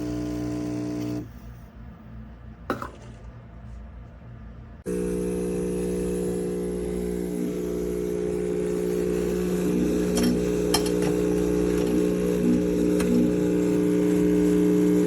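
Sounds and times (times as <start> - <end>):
espresso machine humming: 0.0 - 1.3, 4.8 - 15.0.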